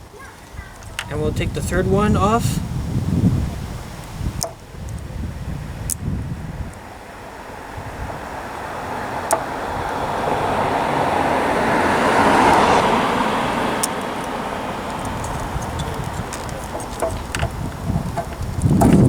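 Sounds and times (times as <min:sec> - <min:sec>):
vehicle driving past: 0:06.2 - 0:18.0.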